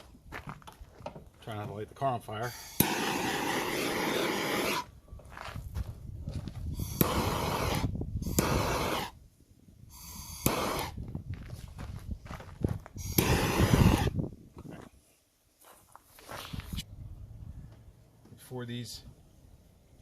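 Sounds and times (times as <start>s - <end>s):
gas flame hissing: 2.4s - 4.9s, 6.7s - 9.2s, 9.9s - 11.0s, 13.0s - 14.2s
torch lighter clicking: 2.6s - 4.8s, 6.8s - 9.1s, 13.0s - 14.0s.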